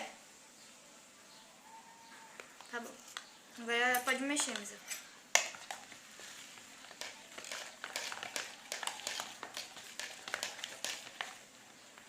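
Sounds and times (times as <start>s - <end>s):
spoon scraping a pot: 6.9s - 11.4s.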